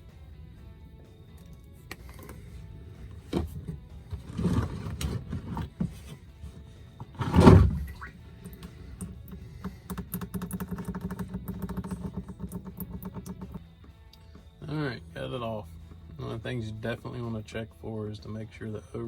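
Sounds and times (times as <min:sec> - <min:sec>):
background music: 0:00.0 - 0:19.0
tools clanking on oil filter: 0:01.9 - 0:13.6
loud clunk: 0:07.0 - 0:08.0.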